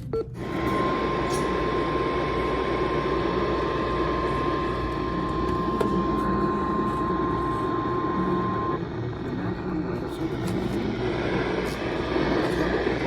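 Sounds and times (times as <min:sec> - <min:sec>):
radio static: 0:01.8 - 0:13.0
emergency alert tone: 0:04.2 - 0:08.9.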